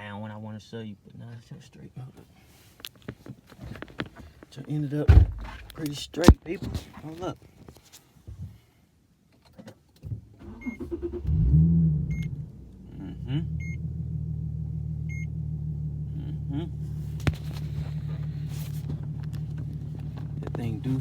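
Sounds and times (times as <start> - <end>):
car engine starting and idling: 10.4 - 21.0
dashboard warning chime beeps: 10.6 - 10.8.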